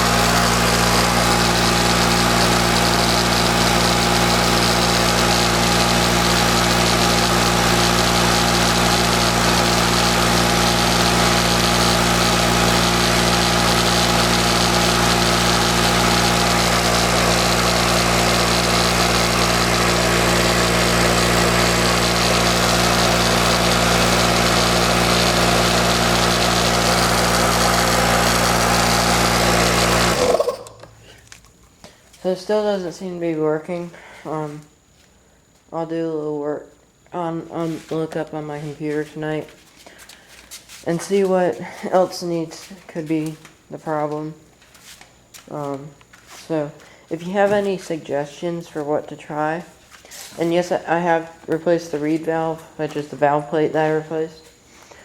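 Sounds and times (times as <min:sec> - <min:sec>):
air compressor running: 0:00.0 - 0:31.4.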